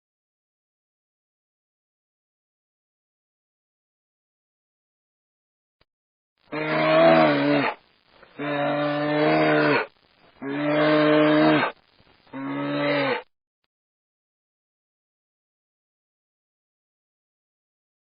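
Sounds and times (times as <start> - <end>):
cow mooing: 6.5 - 7.8, 8.4 - 11.7, 12.3 - 13.3.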